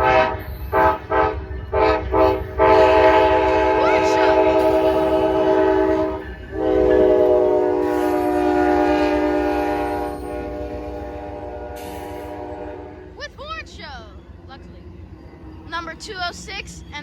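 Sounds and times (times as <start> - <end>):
locomotive horn chord: 0.0 - 13.2.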